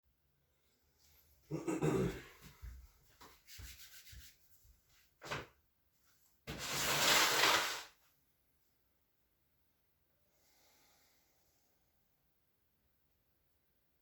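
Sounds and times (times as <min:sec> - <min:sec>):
rubbing and brushing: 0:02.6 - 0:05.5, 0:06.5 - 0:08.0.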